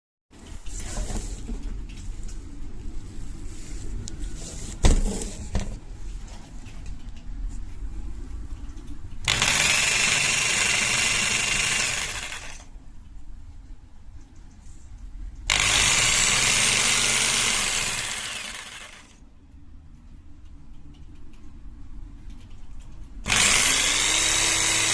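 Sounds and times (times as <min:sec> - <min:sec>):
electric jigsaw running: 0:09.3 - 0:12.7, 0:15.5 - 0:19.2, 0:23.3 - 0:24.9.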